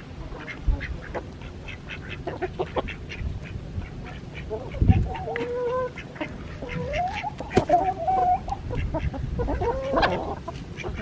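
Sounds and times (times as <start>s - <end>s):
chickens and ducks clucking: 0.0s - 11.0s.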